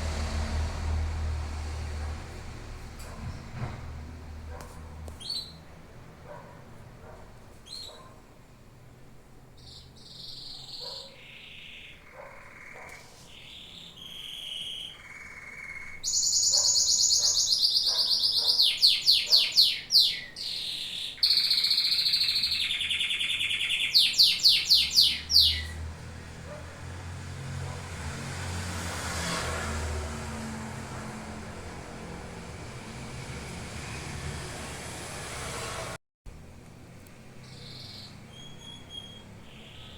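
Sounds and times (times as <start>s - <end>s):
canary singing: 5.2s - 5.6s, 7.6s - 8.1s, 9.6s - 25.8s, 37.4s - 39.9s.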